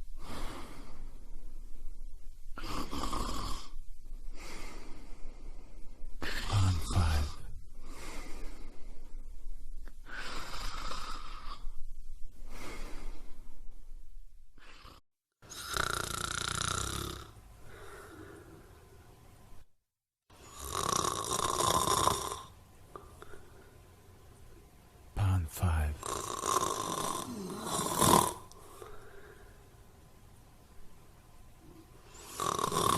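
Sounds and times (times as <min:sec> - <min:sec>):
person snoring: 0:02.6 - 0:03.8, 0:06.2 - 0:08.6, 0:10.0 - 0:11.8, 0:14.6 - 0:18.6, 0:20.4 - 0:22.5, 0:25.2 - 0:29.4, 0:32.1 - 0:32.9.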